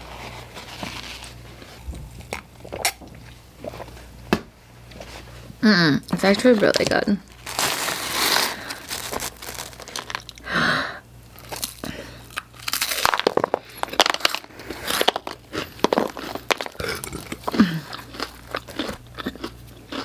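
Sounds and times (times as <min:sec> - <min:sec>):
chewing crunchy food: 0:01.0 - 0:04.1, 0:07.3 - 0:10.5, 0:11.3 - 0:20.0.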